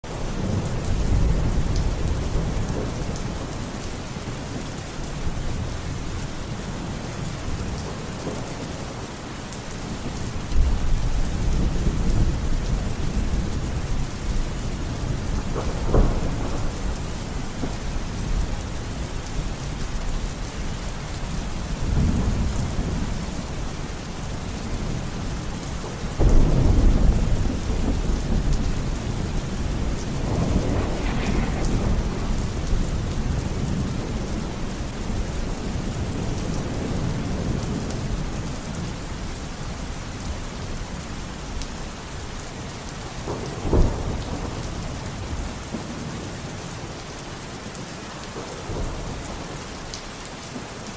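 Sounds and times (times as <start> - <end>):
heavy rain: 0.0 - 50.9
thunder rumbling: 10.0 - 20.4, 21.2 - 38.6, 43.2 - 46.3
sharp thunderclap: 15.4 - 17.0, 26.2 - 34.5, 43.3 - 44.8.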